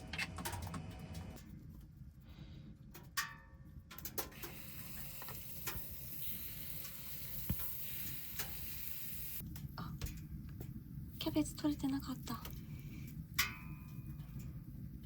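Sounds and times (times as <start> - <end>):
batter sizzling in a pan: 4.0 - 15.0.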